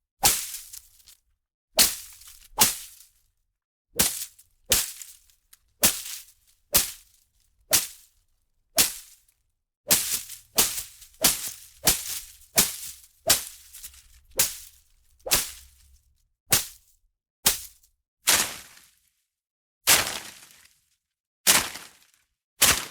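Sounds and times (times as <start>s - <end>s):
sharp swishing strikes: 9.9s - 13.6s
leaves rustling: 9.9s - 14.8s.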